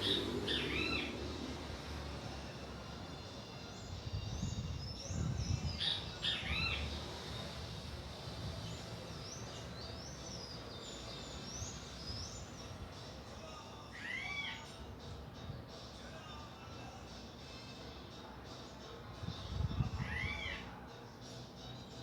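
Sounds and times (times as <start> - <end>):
birds chirping: 0.0 - 14.8.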